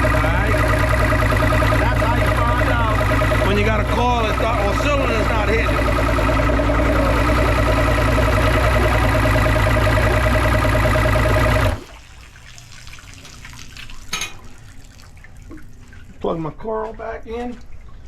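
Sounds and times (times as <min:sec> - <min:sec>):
outboard engine idling roughly: 0:00.0 - 0:11.9
faint trickling water: 0:11.8 - 0:18.0.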